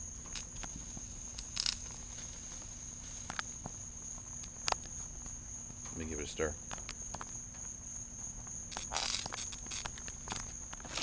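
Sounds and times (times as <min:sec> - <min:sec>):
crickets droning: 0:00.0 - 0:11.0
small wood fire crackling: 0:00.0 - 0:11.0
pot boiling hard: 0:10.8 - 0:11.0.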